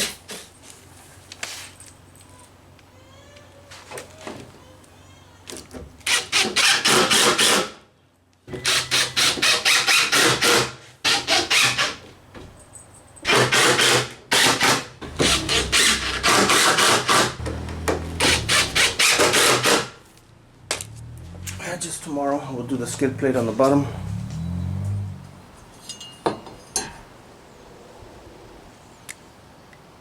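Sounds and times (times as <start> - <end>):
impact driver driving screws: 18.2 - 19.9.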